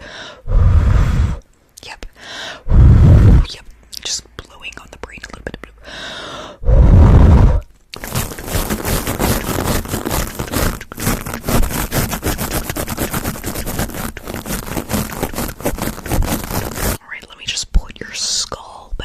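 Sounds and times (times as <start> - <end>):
microphone handling rumble: 2.7 - 3.5, 6.7 - 10.7
scratching on a microphone: 6.9 - 17.0.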